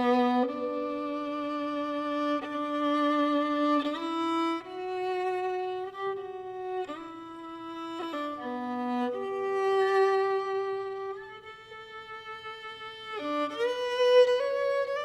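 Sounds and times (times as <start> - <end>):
slow melody of held notes: 0.0 - 7.0.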